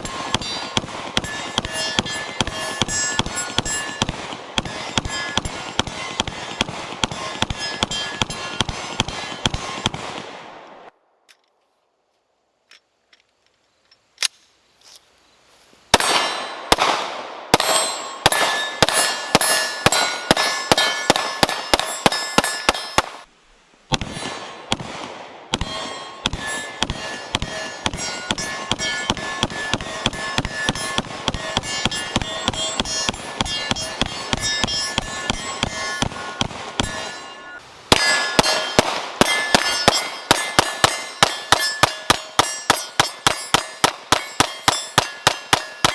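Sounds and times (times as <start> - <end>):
metallic ringing clang: 0.0 - 6.4, 7.1 - 9.4, 17.6 - 23.2, 25.6 - 45.9
pistol shots: 0.0 - 10.8, 15.9 - 23.2, 37.9 - 45.9.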